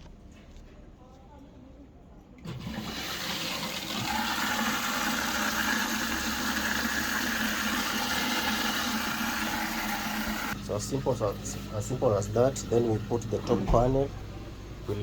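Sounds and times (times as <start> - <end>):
water rushing into washing machine: 2.4 - 14.1.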